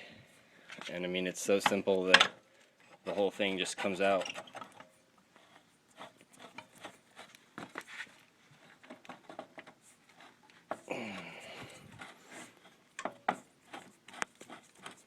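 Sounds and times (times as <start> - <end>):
metallic clicks and knocks: 1.6 - 3.1.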